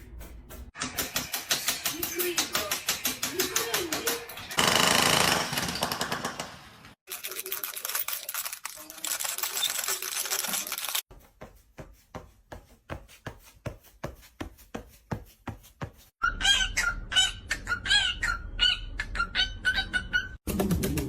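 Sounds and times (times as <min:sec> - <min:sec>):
parrot chirping squawks: 0:16.2 - 0:20.4.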